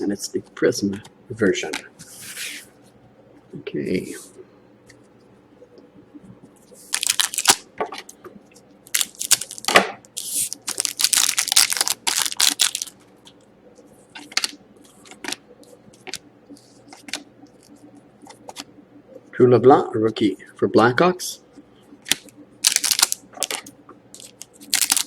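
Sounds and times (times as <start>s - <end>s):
cards clicking and rustling: 6.9s - 7.6s, 8.9s - 13.0s, 22.1s - 25.0s
foil wrapper tearing and crinkling: 6.9s - 7.6s, 8.9s - 13.0s, 22.1s - 25.0s.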